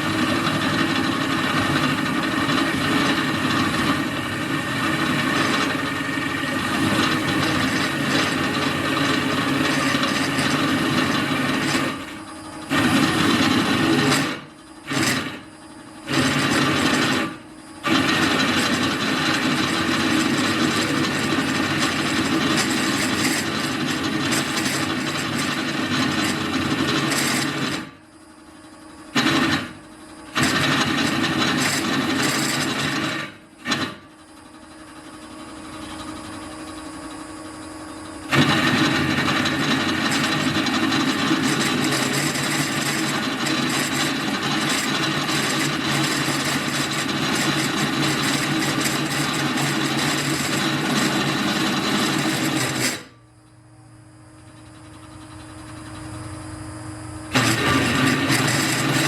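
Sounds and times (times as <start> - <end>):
drill press cutting steel: 0.0 - 28.1, 29.0 - 53.2, 57.3 - 59.0.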